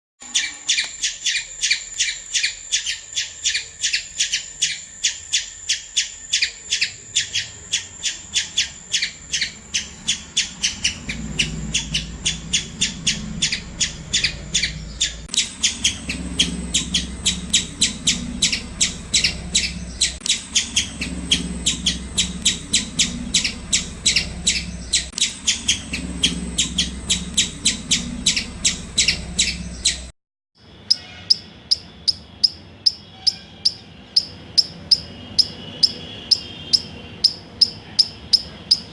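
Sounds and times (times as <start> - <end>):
squirrel chirping calls: 0.2 - 38.9.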